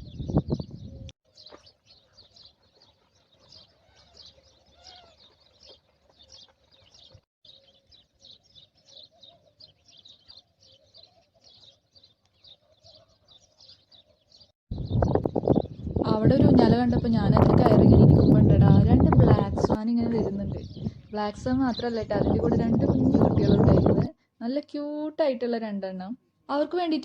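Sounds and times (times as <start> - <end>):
small birds chirping: 0.0 - 24.1
faint wavering bird calls: 0.9 - 16.0.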